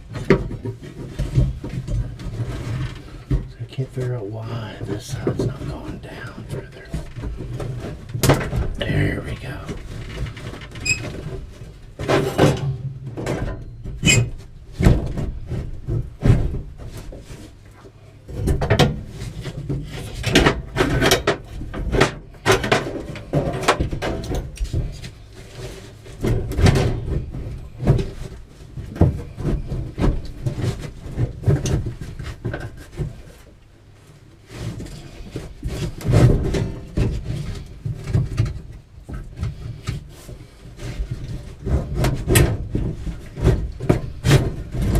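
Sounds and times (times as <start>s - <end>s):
water heater scraping: 0.0s - 14.6s.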